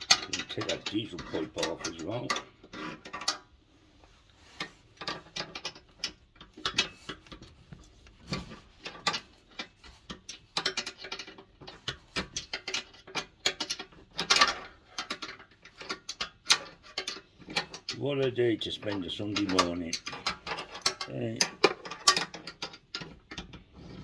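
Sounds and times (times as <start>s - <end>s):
hand tools clicking on metal: 0.0s - 3.5s, 8.9s - 23.6s.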